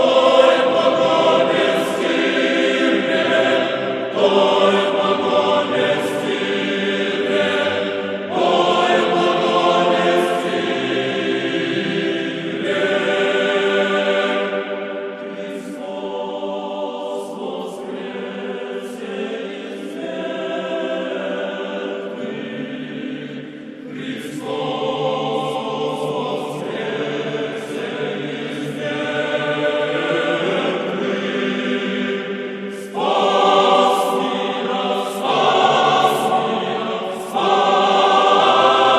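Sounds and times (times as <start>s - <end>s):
choir singing unaccompanied chant: 0.0s - 38.9s.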